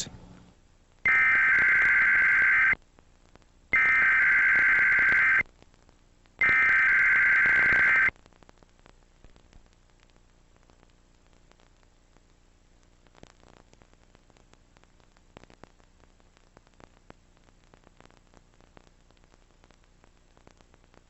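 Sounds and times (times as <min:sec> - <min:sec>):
digital data tone bursts: 0:01.1 - 0:02.8, 0:03.8 - 0:05.4, 0:06.4 - 0:08.1.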